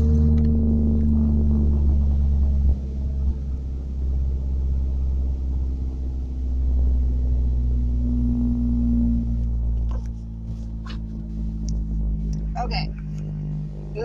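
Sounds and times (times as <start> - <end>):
car engine running: 0.0 - 14.0.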